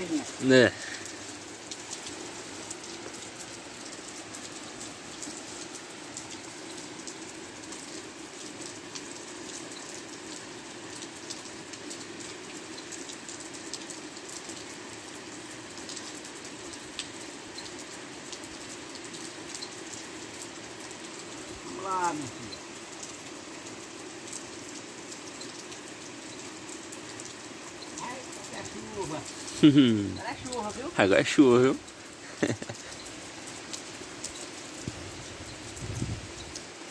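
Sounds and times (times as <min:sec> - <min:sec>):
raindrops ticking on surfaces: 0:00.0 - 0:36.9
steady rain falling: 0:00.0 - 0:36.9.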